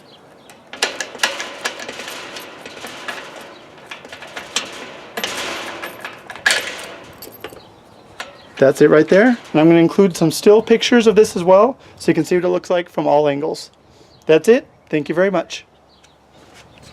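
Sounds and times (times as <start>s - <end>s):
padlock clicking and scraping: 0.0s - 10.2s
metal rattling and rubbing: 0.0s - 11.5s.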